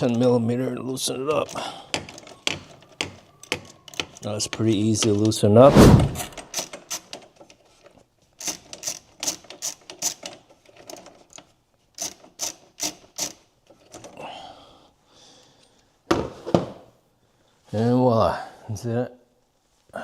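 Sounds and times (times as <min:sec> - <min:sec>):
ratchet clicking: 0:06.4 - 0:07.6, 0:08.4 - 0:11.4, 0:12.0 - 0:13.5.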